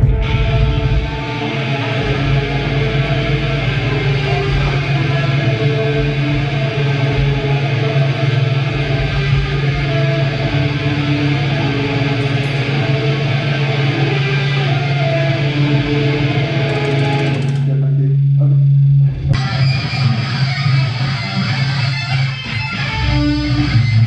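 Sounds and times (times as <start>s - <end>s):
guitar playing notes: 0.0s - 18.0s, 19.2s - 24.0s
steady low drone: 0.0s - 24.0s.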